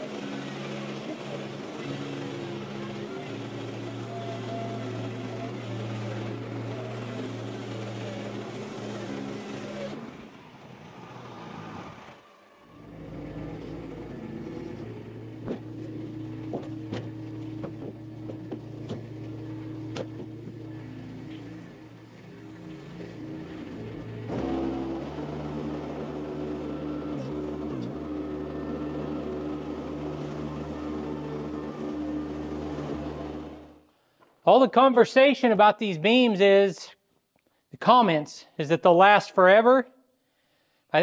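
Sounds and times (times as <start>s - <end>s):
engine running: 0.0s - 34.3s.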